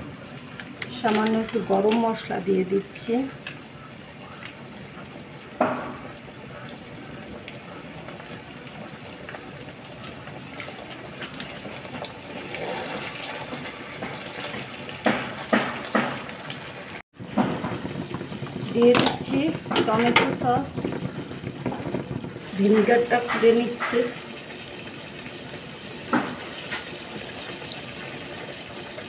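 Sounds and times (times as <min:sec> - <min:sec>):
food bubbling and sizzling in pan: 0:00.0 - 0:29.0
sharp knocks: 0:15.0 - 0:16.3.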